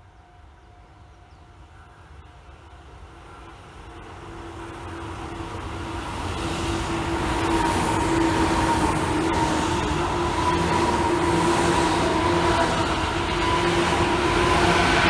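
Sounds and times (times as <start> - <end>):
electric train running past: 0.0 - 15.0
two-note train whine: 0.0 - 15.0.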